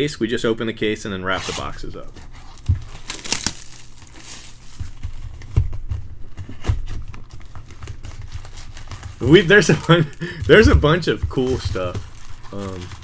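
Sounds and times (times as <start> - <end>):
wrapping paper tearing: 1.3 - 5.2, 7.2 - 13.0
dull bumps of box handled: 4.7 - 12.5.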